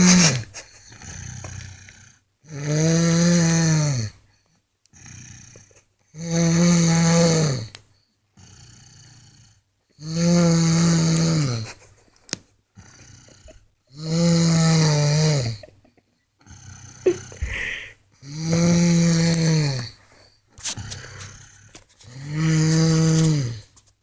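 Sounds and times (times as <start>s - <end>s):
person snoring loudly: 1.0s - 4.2s, 6.2s - 7.7s, 8.4s - 11.6s, 12.8s - 15.8s, 16.4s - 20.0s, 20.8s - 23.7s
quiet breathing: 12.7s - 13.9s, 15.5s - 23.8s.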